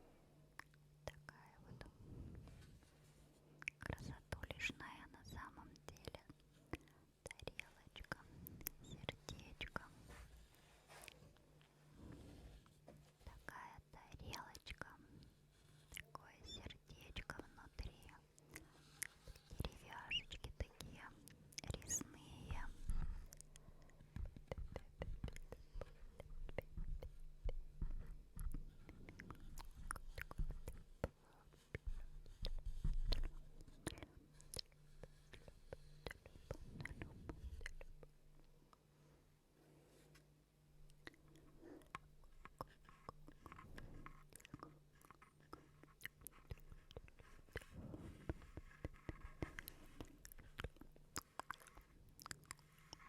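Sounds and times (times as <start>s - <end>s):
faint low hum: 0.0s - 53.0s
wet mouth clicks and smacks: 49.6s - 52.7s.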